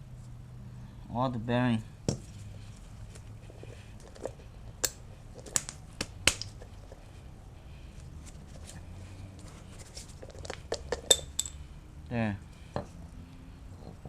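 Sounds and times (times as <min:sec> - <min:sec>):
steady low hum: 0:00.0 - 0:14.0
metal clicks and clinks: 0:10.3 - 0:11.6.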